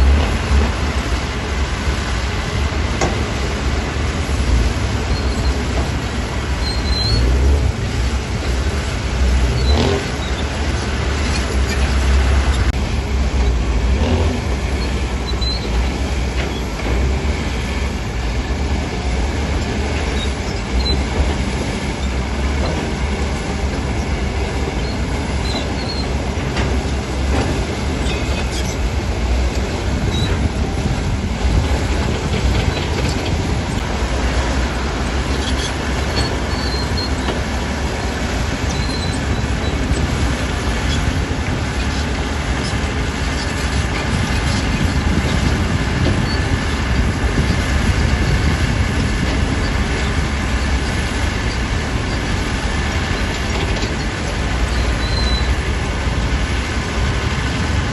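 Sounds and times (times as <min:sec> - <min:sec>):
diesel engine rumble: 0:00.0 - 0:57.9
metallic squeaks: 0:06.6 - 0:07.3, 0:14.8 - 0:15.8, 0:24.8 - 0:26.2, 0:35.3 - 0:37.4, 0:38.6 - 0:40.1, 0:53.1 - 0:55.5.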